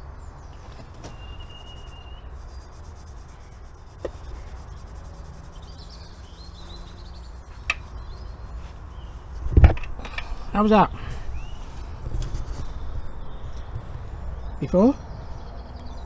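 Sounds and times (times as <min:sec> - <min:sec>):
low outdoor background: 0:00.0 - 0:16.0
faint bird chirps: 0:01.1 - 0:09.2.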